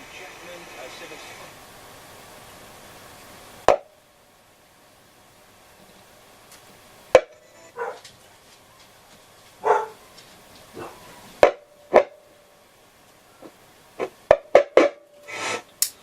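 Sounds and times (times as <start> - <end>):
radio cutting in and out: 0.0 - 1.6, 15.2 - 15.8.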